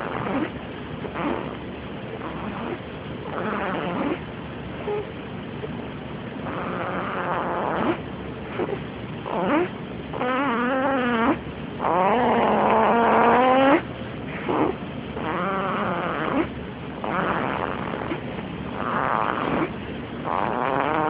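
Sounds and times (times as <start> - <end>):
snoring with whistly tone: 0.0 - 0.6, 1.2 - 1.6, 2.2 - 4.2, 6.4 - 13.8, 14.4 - 18.2, 18.8 - 21.0.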